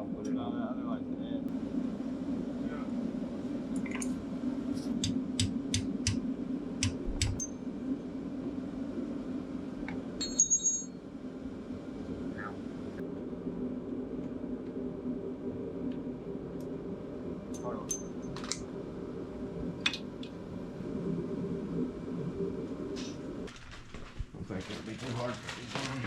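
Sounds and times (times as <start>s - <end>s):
steady low hum: 0.0s - 26.0s
ringing metallic clink: 10.2s - 11.0s.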